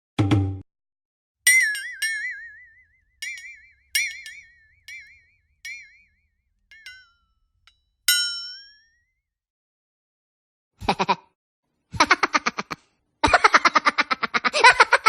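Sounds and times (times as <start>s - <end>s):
bright chime-like dings: 1.5s - 9.1s.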